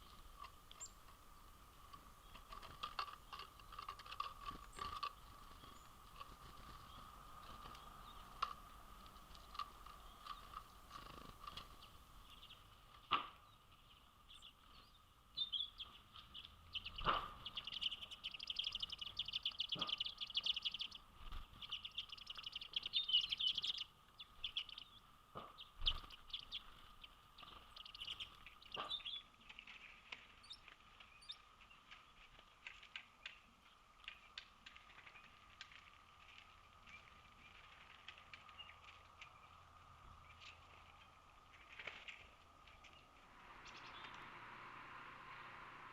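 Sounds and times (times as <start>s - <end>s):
small birds chirping: 0.0s - 45.9s
faint steady tone: 33.6s - 45.9s.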